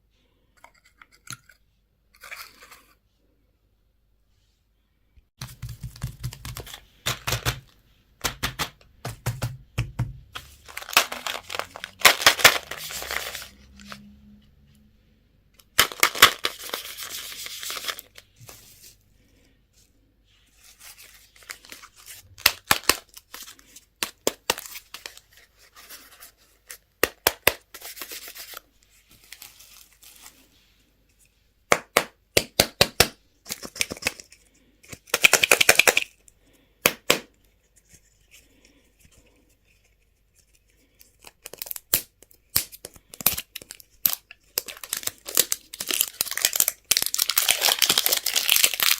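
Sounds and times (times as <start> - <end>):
sharp clicks and taps: 5.4 - 10.2
plastic packaging tearing and crinkling: 10.4 - 14.0, 41.2 - 48.9.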